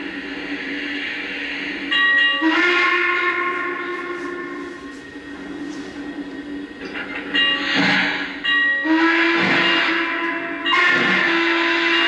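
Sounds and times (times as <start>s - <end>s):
model train steam whistle: 2.3s - 4.9s, 8.8s - 12.0s.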